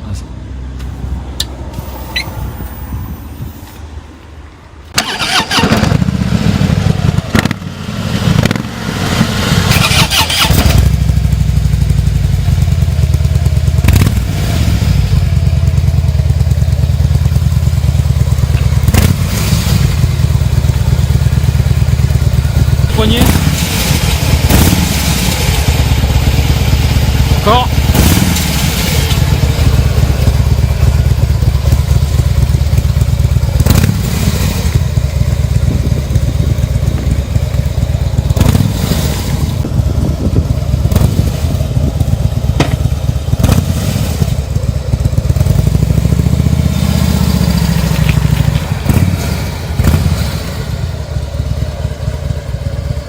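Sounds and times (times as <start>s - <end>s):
motorcycle engine revving: 5.0s - 53.0s.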